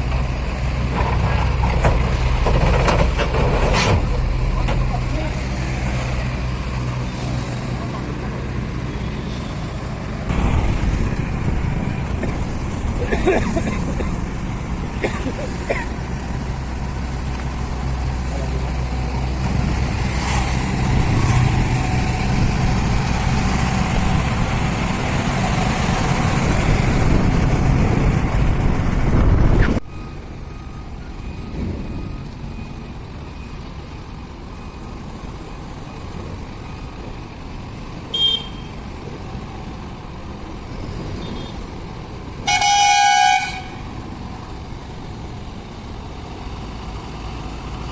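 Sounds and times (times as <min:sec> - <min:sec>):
diesel truck engine running: 0:00.0 - 0:42.6
road and vehicle noise: 0:00.0 - 0:47.9.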